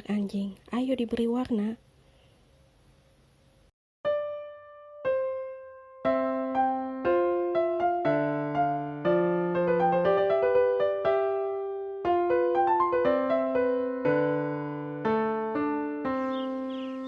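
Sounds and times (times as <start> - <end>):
gentle piano music: 4.0 - 17.0.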